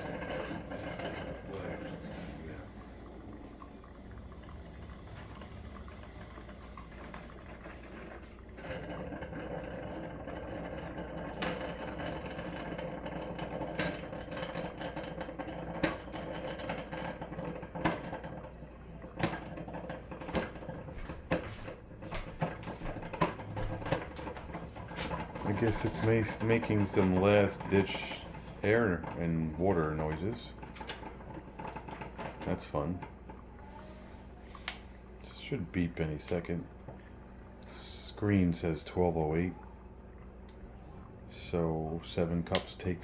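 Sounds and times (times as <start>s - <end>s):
coffee maker hissing and gurgling: 0.0s - 43.0s
coffee maker pops and spurts: 13.4s - 18.5s, 19.1s - 20.6s.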